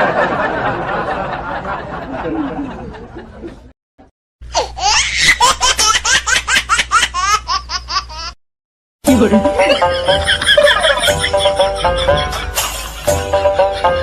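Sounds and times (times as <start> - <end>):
high-pitched rapid laugh: 4.6 - 8.4, 9.5 - 14.0
person laughing: 9.2 - 14.0.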